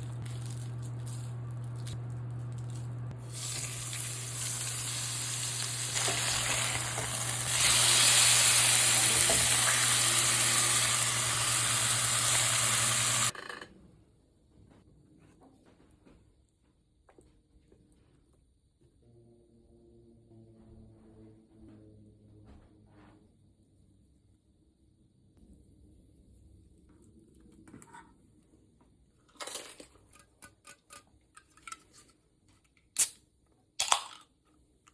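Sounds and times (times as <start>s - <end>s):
food sizzling in a hot pan: 3.2s - 13.3s.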